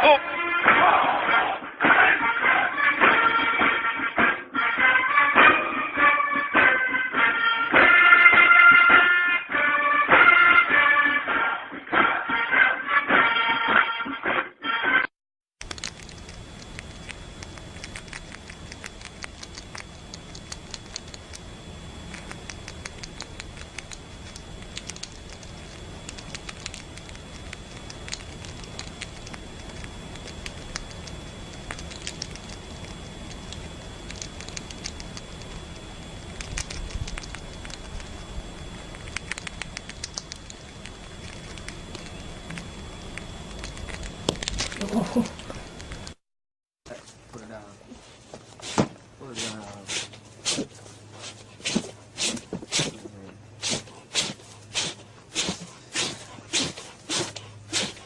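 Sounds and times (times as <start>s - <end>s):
faint high whine: 15.6s - 46.2s.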